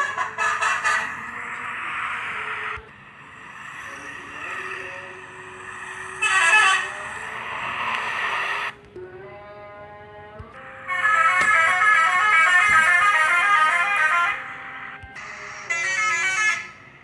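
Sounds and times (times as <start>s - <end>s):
musical bus air horn: 0.0s - 1.6s, 4.8s - 7.4s, 10.5s - 17.0s.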